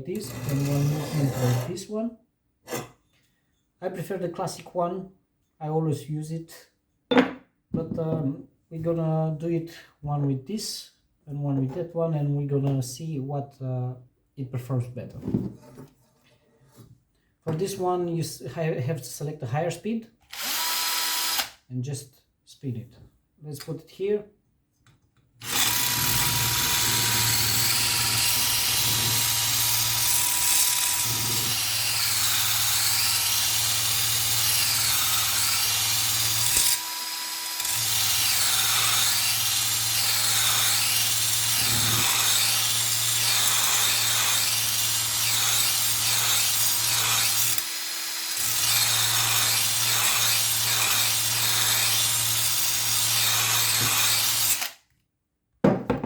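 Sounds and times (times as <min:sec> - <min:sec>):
stone grinding steel blade: 0:00.2 - 0:01.7, 0:45.2 - 0:47.4
drill motor humming: 0:25.4 - 0:54.7.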